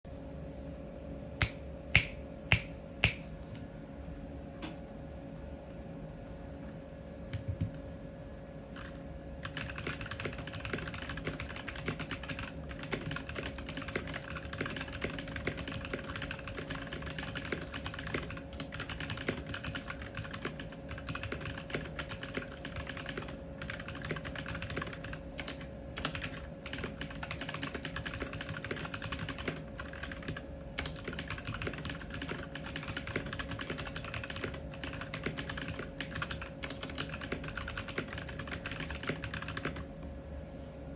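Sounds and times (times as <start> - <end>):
mechanical keyboard typing: 8.8 - 39.9.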